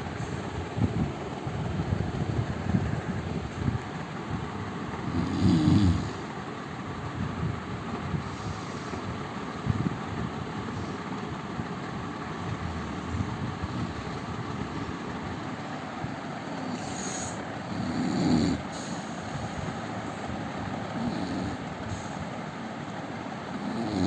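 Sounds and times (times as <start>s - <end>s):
steady background hiss: 0.0s - 24.0s
man snoring: 5.0s - 6.4s, 16.4s - 19.5s, 20.8s - 22.1s, 23.5s - 24.0s.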